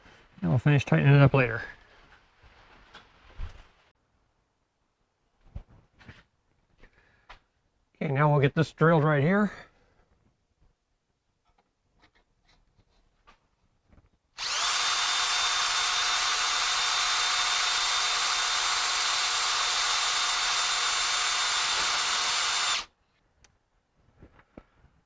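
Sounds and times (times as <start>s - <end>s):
power drill boring a hole: 14.4s - 22.9s.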